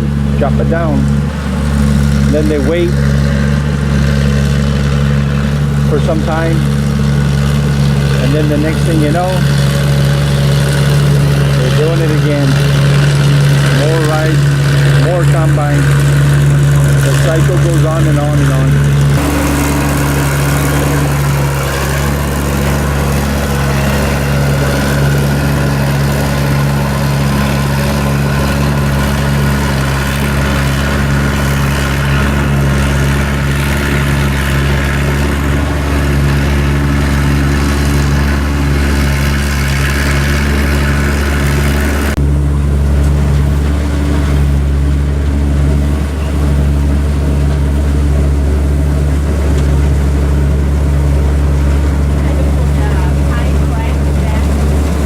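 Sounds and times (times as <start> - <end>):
harvester engine hum: 0.0 - 55.0
mechanical rushing noise: 0.0 - 55.0.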